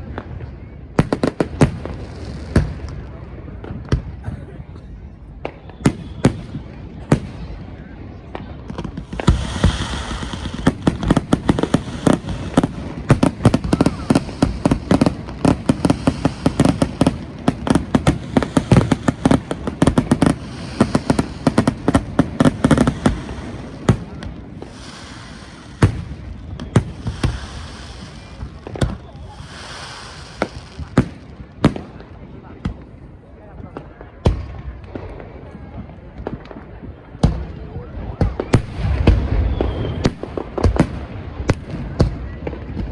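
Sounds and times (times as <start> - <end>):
fireworks bangs and booms: 0.0 - 42.9
fireworks crackling and fizzing: 0.0 - 42.9.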